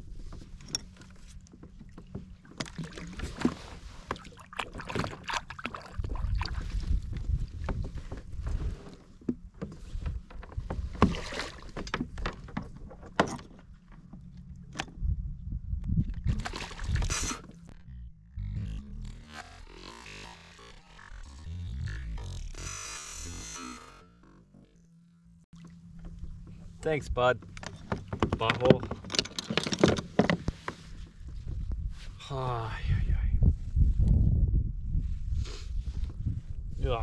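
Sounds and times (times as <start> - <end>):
knocks and clatter on kayak hull: 0.0 - 15.1, 25.6 - 31.6
steady low rumble: 14.4 - 19.7, 20.8 - 28.4, 31.1 - 37.0.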